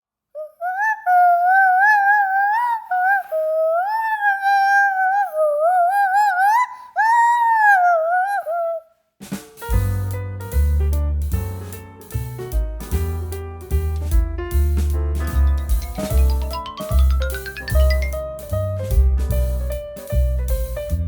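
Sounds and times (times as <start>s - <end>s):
piano bass and drums music: 9.2s - 21.0s.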